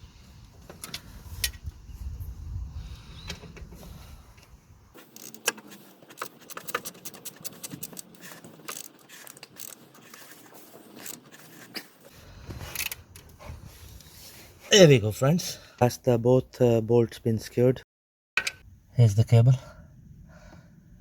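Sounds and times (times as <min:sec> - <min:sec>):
tool scraping: 0:05.0 - 0:14.7.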